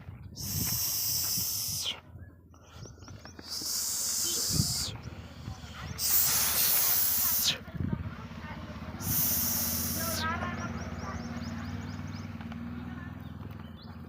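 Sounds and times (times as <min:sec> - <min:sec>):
bursts of hissing: 0:00.4 - 0:02.0, 0:03.4 - 0:07.6, 0:09.0 - 0:10.3.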